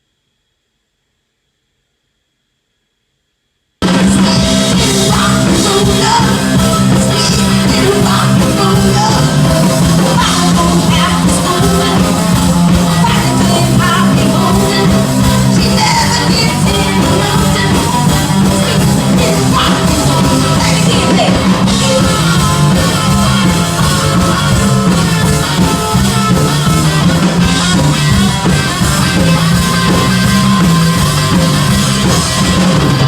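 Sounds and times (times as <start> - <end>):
person singing: 3.8 - 26.7
live rock band playing: 3.8 - 33.0.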